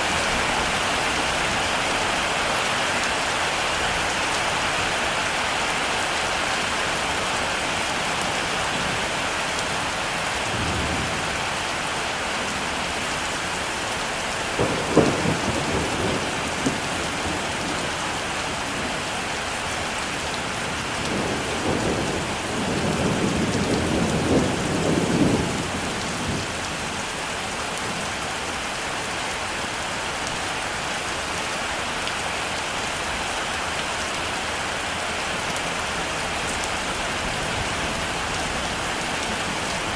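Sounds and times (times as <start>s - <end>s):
heavy rain: 0.0s - 39.9s
thunder cracking and rumbling: 14.6s - 18.0s.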